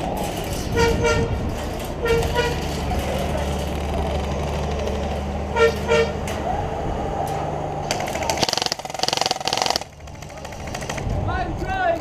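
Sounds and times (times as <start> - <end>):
vehicle engine running: 0.0 - 11.9
full-auto airsoft gunfire: 7.9 - 11.0.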